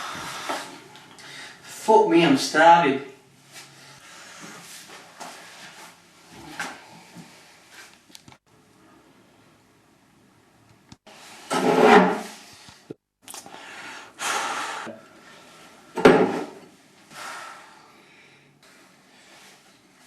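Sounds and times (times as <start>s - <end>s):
drawers and cupboards opening and shutting: 11.3s - 12.4s, 16.0s - 16.7s.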